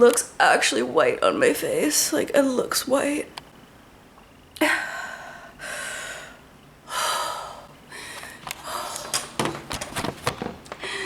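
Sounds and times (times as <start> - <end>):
woman breathing loudly: 4.6 - 9.2, 10.7 - 11.0.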